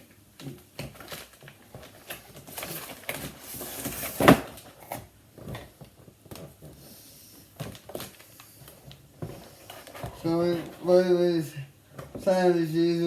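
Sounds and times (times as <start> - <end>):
packaging rustling: 0.4 - 6.8.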